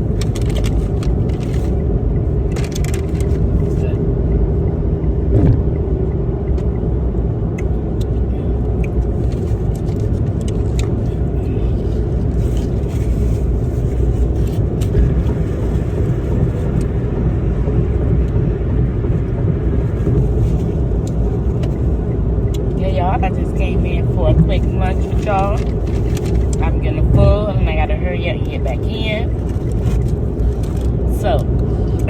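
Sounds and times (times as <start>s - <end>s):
road and engine rumble in car: 0.0s - 32.0s.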